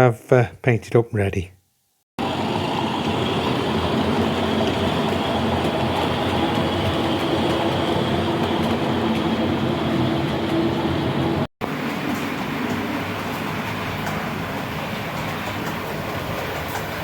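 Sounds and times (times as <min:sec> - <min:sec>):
train engine drone: 0:02.2 - 0:17.0
train rail noise: 0:02.2 - 0:17.0.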